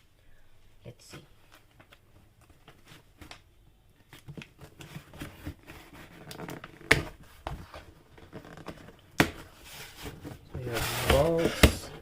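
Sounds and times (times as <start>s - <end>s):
package rustling and scraping: 4.2s - 12.0s.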